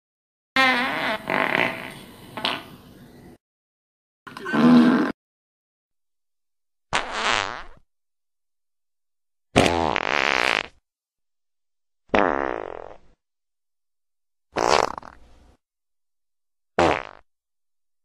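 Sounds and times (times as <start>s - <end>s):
fart sound effects: 0.6s - 2.7s, 4.4s - 5.2s, 6.9s - 7.8s, 9.6s - 10.8s, 12.1s - 13.1s, 14.5s - 15.2s, 16.8s - 17.3s.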